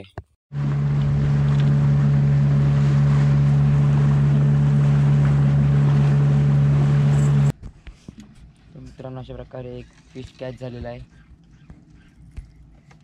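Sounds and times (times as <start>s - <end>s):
boat engine drone: 0.5s - 7.5s.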